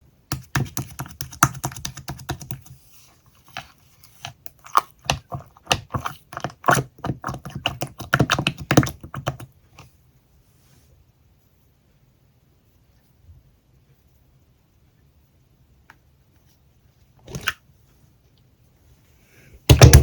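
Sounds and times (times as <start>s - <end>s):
typing on a keyboard: 0.3s - 2.8s.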